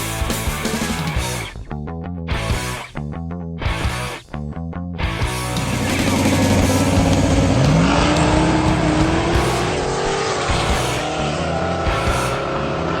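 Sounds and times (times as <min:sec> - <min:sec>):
car engine accelerating: 0:05.0 - 0:13.0.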